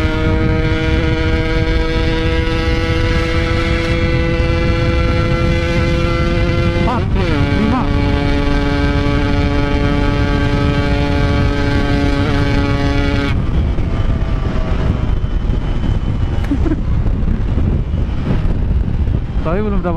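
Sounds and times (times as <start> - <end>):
two-stroke motorcycle engine revving: 0.0 - 13.6
wind rush: 0.0 - 19.9.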